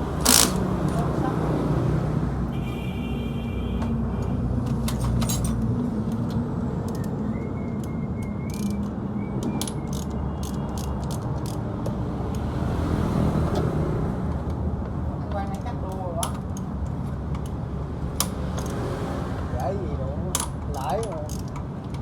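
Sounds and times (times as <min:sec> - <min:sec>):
metallic clicks and clinks: 0:04.9 - 0:06.3, 0:20.3 - 0:22.0.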